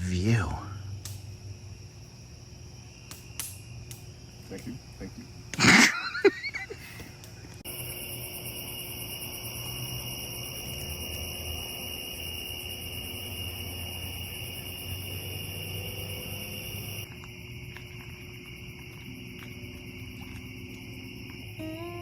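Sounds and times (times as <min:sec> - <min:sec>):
crickets and insects trilling: 0:00.0 - 0:22.0.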